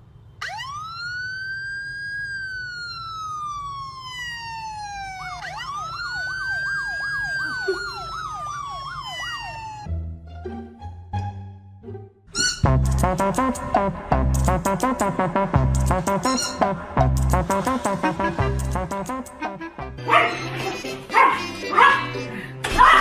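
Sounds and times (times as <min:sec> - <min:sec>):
emergency siren wailing: 0:00.4 - 0:09.9
siren fast yelp: 0:00.4 - 0:09.9, 0:16.1 - 0:16.8.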